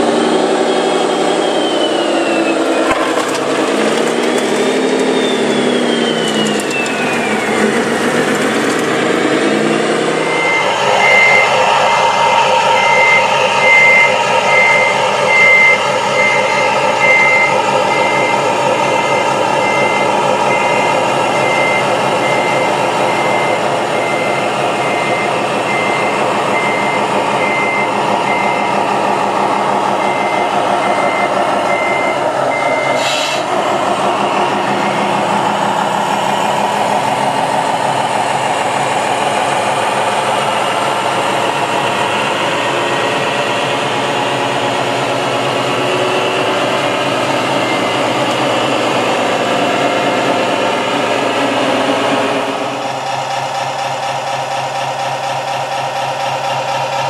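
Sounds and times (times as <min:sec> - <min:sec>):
steady engine: 0:00.0 - 0:57.0
reversing alarm beeping: 0:00.6 - 0:37.3, 0:45.8 - 0:52.9.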